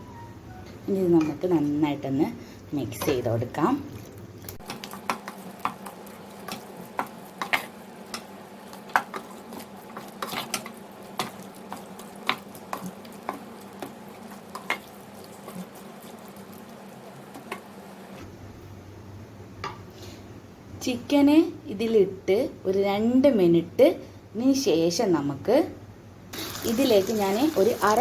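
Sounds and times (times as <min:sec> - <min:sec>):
low sizzle in a pan: 0:00.0 - 0:20.2, 0:26.3 - 0:28.0.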